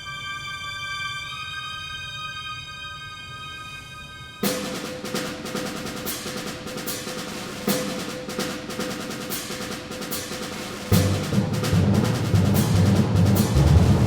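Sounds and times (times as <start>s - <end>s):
loud drum accent: 4.4s - 14.0s
rapid snare drum roll: 4.4s - 14.0s.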